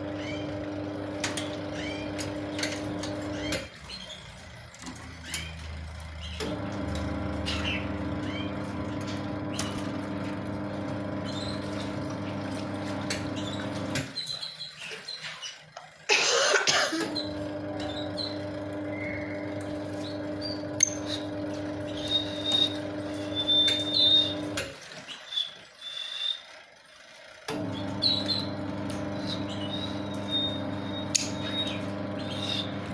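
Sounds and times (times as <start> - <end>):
machine hum: 0.0 - 14.1, 17.0 - 24.7, 27.5 - 32.9
lovebirds chirping: 17.8 - 24.5, 28.0 - 32.9.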